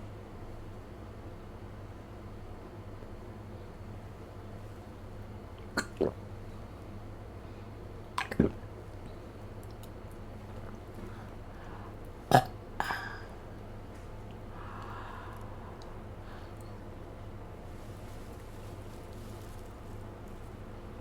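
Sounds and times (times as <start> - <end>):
woman burping: 12.3 - 13.2.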